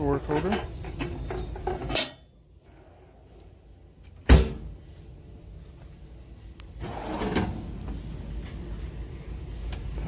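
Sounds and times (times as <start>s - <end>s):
low steady background hum: 0.0s - 10.0s
metal drawer shutting with a bang: 4.2s - 4.7s, 6.8s - 7.7s.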